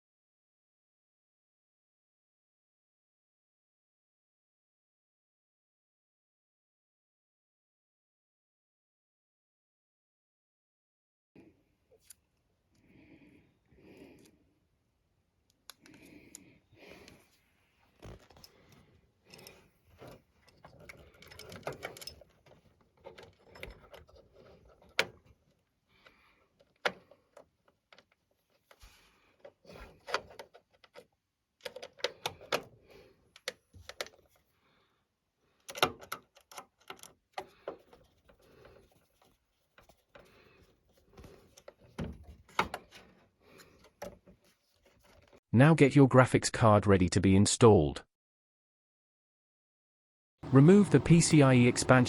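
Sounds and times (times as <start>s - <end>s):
small clicks and rattles of parts: 15.5s - 17.3s, 17.9s - 34.6s, 35.5s - 45.4s.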